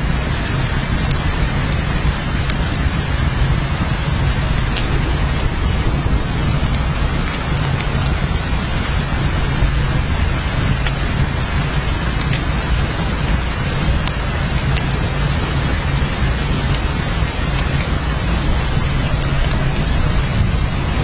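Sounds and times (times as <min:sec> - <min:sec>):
heavy rain: 0:00.0 - 0:21.0
low rumble: 0:00.0 - 0:21.0
rain drop ticks: 0:00.0 - 0:21.0.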